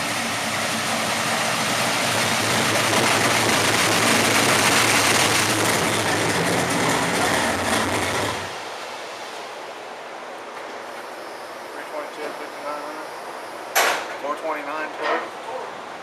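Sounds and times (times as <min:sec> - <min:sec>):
engine running hard under load: 0:00.0 - 0:08.8
dyno rollers hissing: 0:00.0 - 0:09.0.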